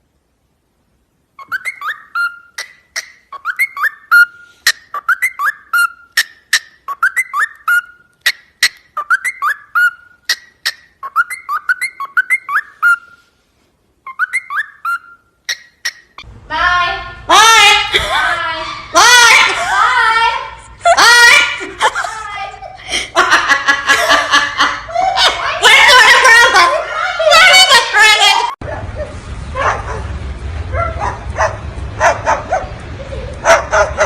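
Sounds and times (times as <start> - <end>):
parrot whistling: 1.4 - 13.3, 14.0 - 16.2.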